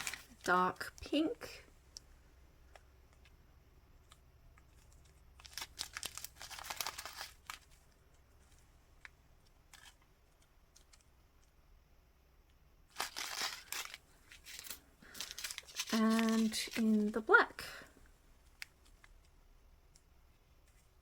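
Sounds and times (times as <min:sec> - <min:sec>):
plastic packets crinkling: 0:00.0 - 0:01.6, 0:04.0 - 0:11.1, 0:12.9 - 0:19.4.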